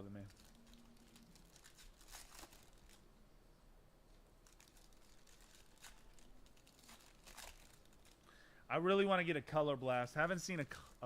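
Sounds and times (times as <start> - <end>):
foil card packs rustling: 0.2 - 3.0, 4.4 - 8.2.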